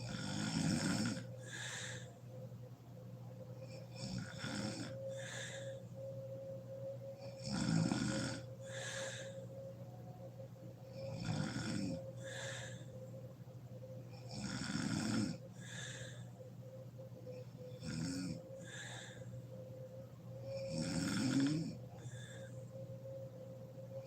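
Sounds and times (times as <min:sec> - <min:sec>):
woman snoring: 0:00.0 - 0:02.1, 0:03.6 - 0:06.0, 0:07.2 - 0:09.5, 0:10.8 - 0:13.0, 0:14.1 - 0:16.3, 0:17.3 - 0:19.4, 0:20.4 - 0:22.7
faint steady hum: 0:00.0 - 0:24.0
breathy breath: 0:01.1 - 0:02.5, 0:04.9 - 0:06.8, 0:08.4 - 0:11.1, 0:11.9 - 0:14.2, 0:15.3 - 0:17.6, 0:18.4 - 0:20.6, 0:21.8 - 0:24.0.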